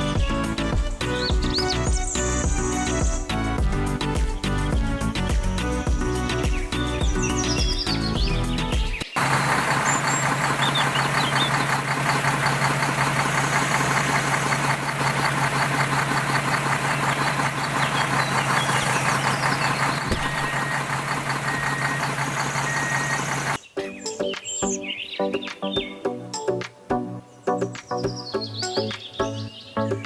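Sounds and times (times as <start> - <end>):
engine with knocking patter: 0.0 - 23.6.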